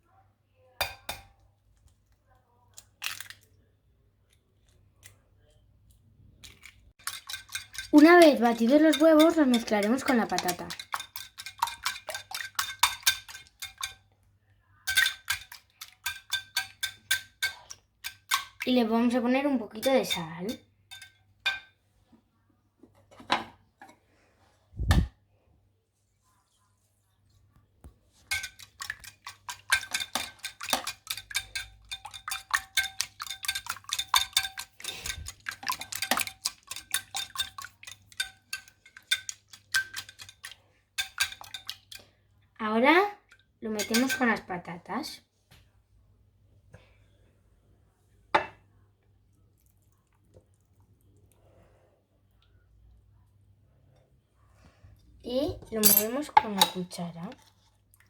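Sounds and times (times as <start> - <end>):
whisk clinking against bowl: 0.8 - 1.3, 7.0 - 14.0, 14.9 - 18.7, 19.7 - 21.7, 28.2 - 42.0, 43.8 - 44.4.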